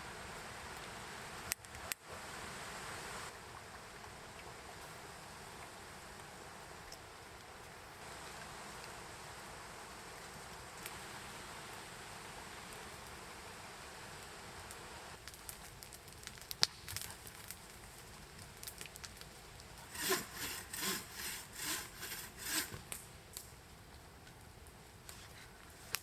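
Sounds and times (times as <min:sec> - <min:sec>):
steady hiss: 0:00.0 - 0:26.0
hand saw cutting wood: 0:19.9 - 0:22.9.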